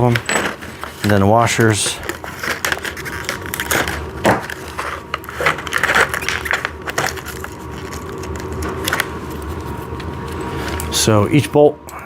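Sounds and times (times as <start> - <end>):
metal bolts and washers clinking: 0.0 - 2.0.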